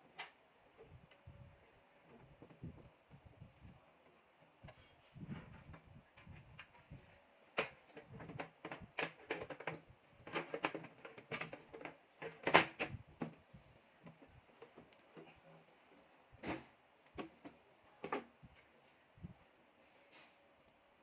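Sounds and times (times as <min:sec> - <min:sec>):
computer parts clicking and knocking: 0:07.5 - 0:13.4.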